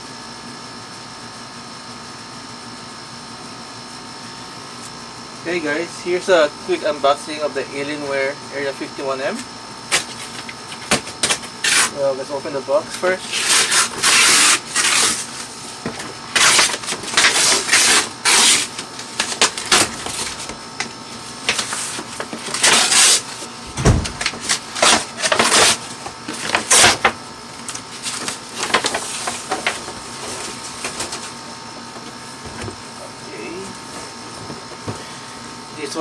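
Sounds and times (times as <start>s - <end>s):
cardboard scraping and rustling: 9.9s - 12.0s, 13.0s - 31.4s
dull thump: 23.7s - 24.4s.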